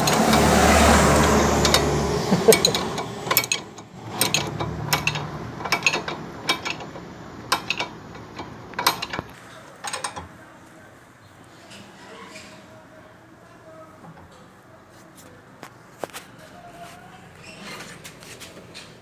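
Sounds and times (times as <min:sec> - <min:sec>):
metallic clacks of ball joint: 0:01.2 - 0:10.3.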